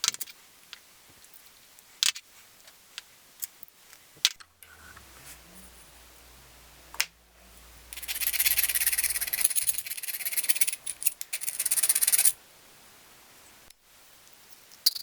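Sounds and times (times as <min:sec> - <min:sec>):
fast rasping scraping: 0:07.9 - 0:10.8.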